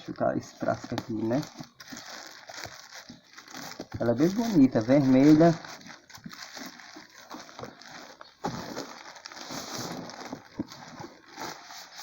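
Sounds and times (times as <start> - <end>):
packaging rustling and crinkling: 0.0 - 12.0.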